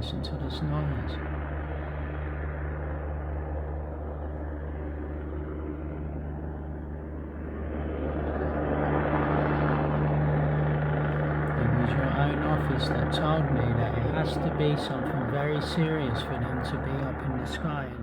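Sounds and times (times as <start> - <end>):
helicopter hovering: 0.0 - 18.0.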